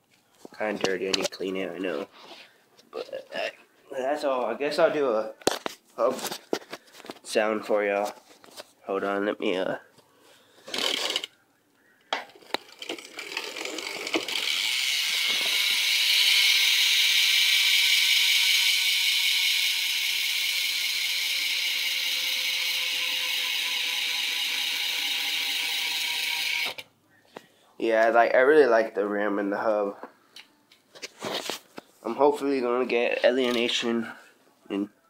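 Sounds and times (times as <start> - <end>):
bike hub freewheel ratcheting: 10.7 - 11.3, 12.5 - 26.8.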